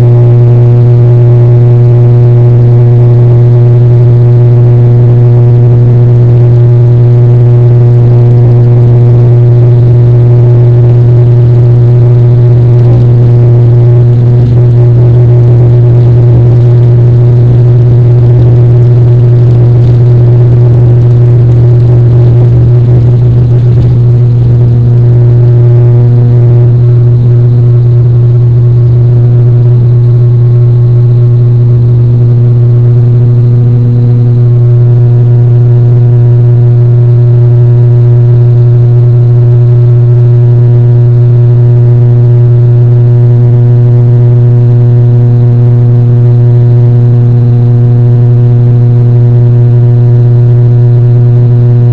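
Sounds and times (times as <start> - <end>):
drone motors humming: 7.3 - 37.3.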